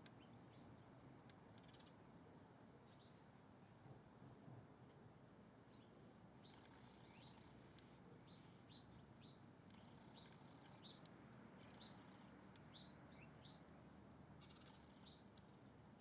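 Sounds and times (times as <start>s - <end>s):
faint small bird chirping: 0.0s - 0.9s, 1.5s - 2.0s, 2.8s - 3.2s, 5.7s - 13.7s, 14.4s - 16.0s.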